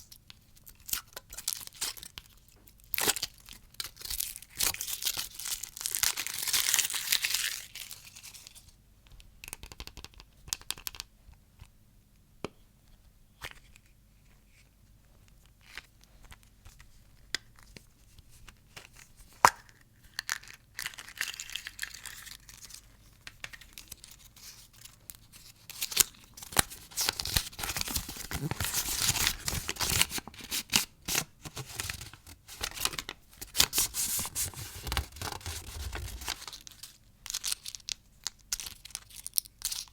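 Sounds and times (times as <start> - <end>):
candy packaging crinkling: 2.9 - 8.5, 18.9 - 39.9.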